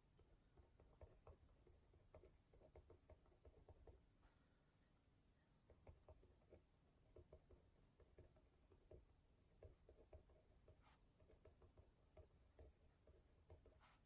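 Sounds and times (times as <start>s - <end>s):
pen writing on paper: 9.6s - 14.0s.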